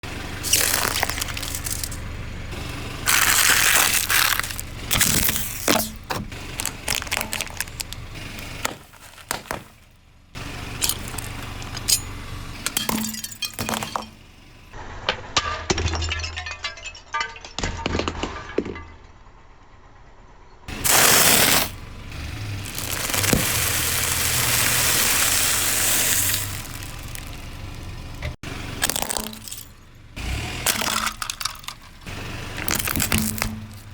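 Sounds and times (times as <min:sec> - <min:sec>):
car rumble: 0:00.0 - 0:15.4, 0:16.9 - 0:33.9
tyres crushing brittle objects: 0:00.4 - 0:02.1, 0:03.0 - 0:09.9, 0:10.8 - 0:14.2, 0:20.8 - 0:21.8, 0:22.4 - 0:33.9.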